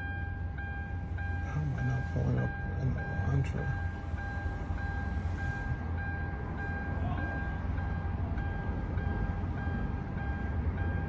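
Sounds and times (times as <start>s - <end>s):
pulsing electronic warning tone: 0.0s - 11.0s.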